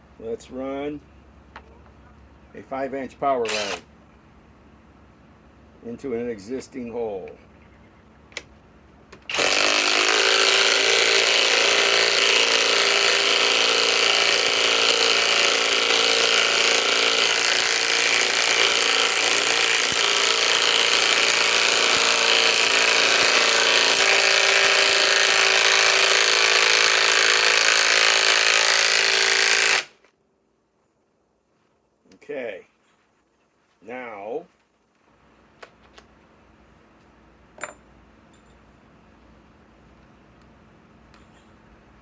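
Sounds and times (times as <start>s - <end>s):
impact wrench running under load: 3.5s - 3.8s, 9.3s - 30.0s.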